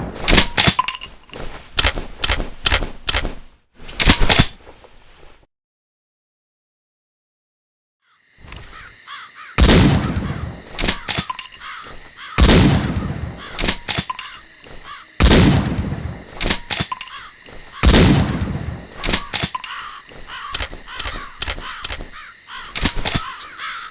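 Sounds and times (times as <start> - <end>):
crows cawing: 8.0 - 15.2, 16.9 - 17.9, 18.8 - 23.9
shotgun shots: 9.6 - 11.3, 12.4 - 14.0, 15.2 - 17.0, 17.8 - 19.6.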